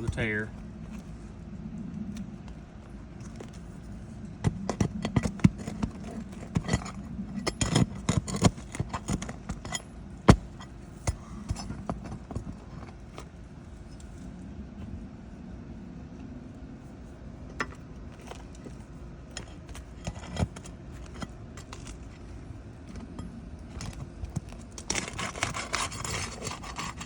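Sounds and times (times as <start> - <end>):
shingles cracking and tearing: 23.8 - 27.0.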